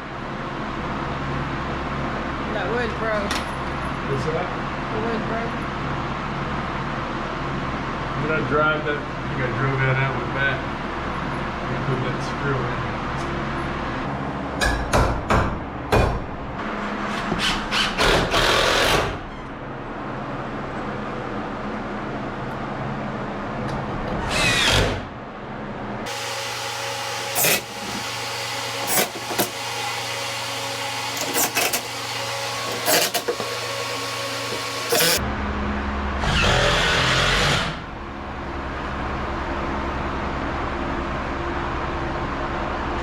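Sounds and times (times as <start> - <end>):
power drill driving screws: 17.4 - 19.2, 24.2 - 25.0, 26.1 - 35.2.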